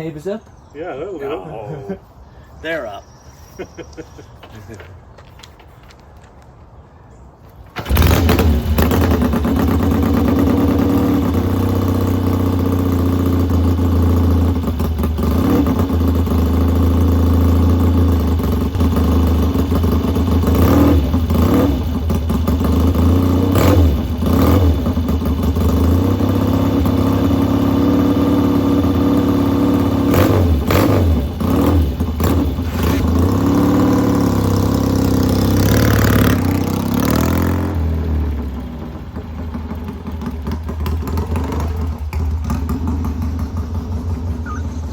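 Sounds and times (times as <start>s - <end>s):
motorcycle engine running: 7.8s - 44.9s
throttle blips revving engine: 18.8s - 38.5s, 40.8s - 44.9s.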